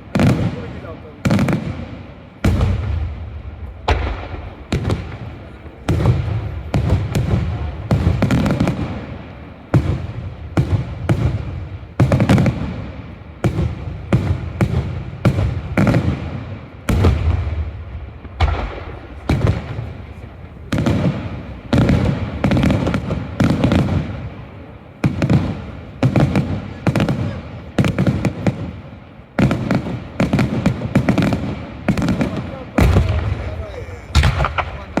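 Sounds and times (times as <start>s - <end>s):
low rumbling echo: 0.0s - 35.0s
firework shells bursting: 29.4s - 35.0s.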